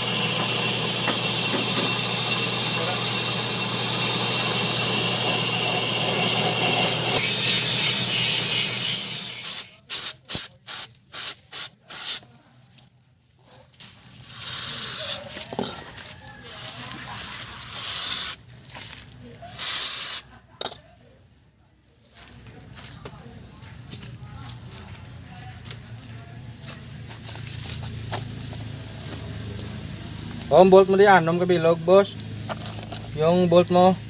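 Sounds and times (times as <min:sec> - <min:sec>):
mechanical noise with high whine: 0:00.0 - 0:09.8.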